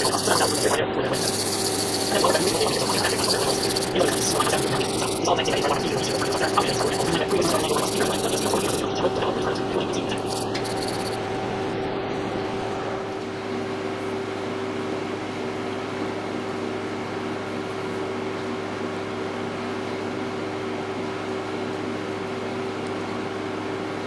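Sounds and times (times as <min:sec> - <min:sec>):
machine-tool motor humming: 0:00.0 - 0:13.3.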